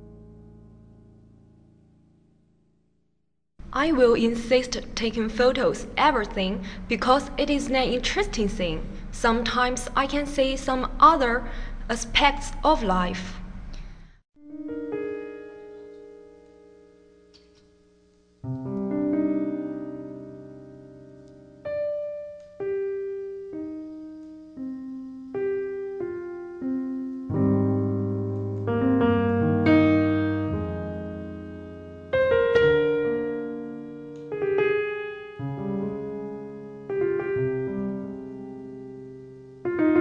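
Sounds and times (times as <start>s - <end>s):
slow piano melody: 0.0s - 2.2s, 14.4s - 40.0s.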